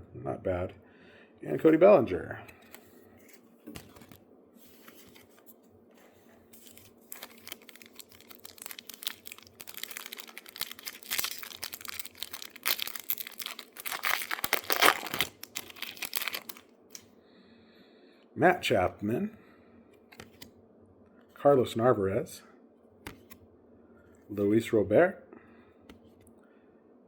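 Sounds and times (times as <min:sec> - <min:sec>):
cards being handled: 0:02.5 - 0:17.0, 0:20.1 - 0:20.5, 0:23.0 - 0:23.4
wrapper tearing and crinkling: 0:06.6 - 0:16.6.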